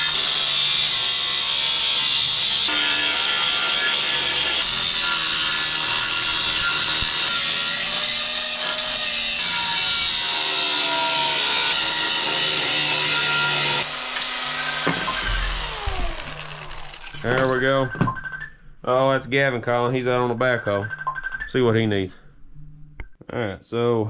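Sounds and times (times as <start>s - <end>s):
cutoff wheel grinding metal: 0.0s - 17.5s.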